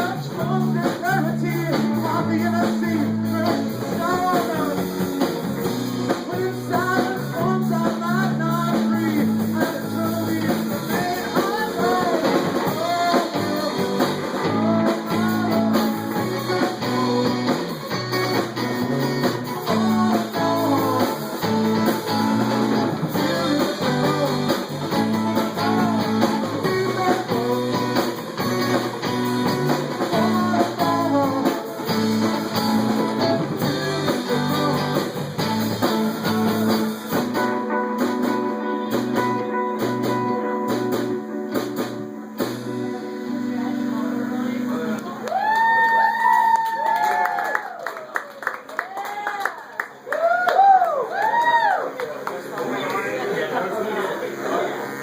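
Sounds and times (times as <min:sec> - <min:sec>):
guitar sliding melodic notes: 0:00.0 - 0:45.2
live band playing: 0:00.0 - 0:47.7.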